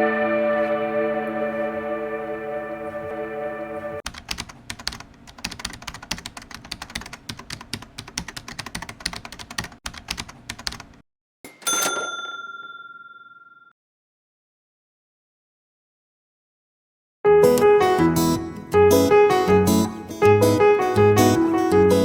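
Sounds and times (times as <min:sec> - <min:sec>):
computer keyboard typing: 0:04.1 - 0:11.0
bell ding: 0:11.5 - 0:13.7.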